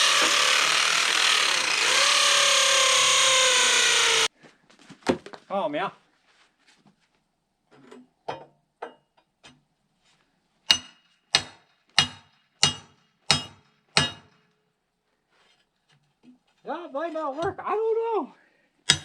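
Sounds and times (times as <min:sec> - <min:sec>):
steel tool hammering metal: 0:10.7 - 0:14.3.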